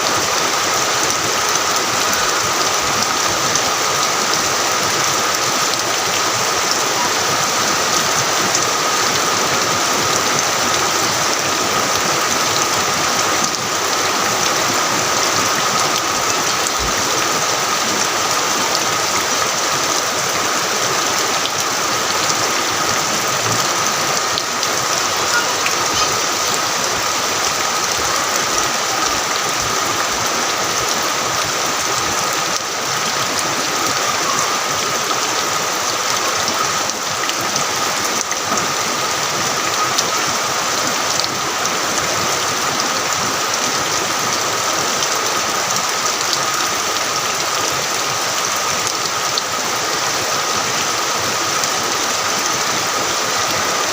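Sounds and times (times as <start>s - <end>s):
heavy rain pouring: 0.0s - 53.9s.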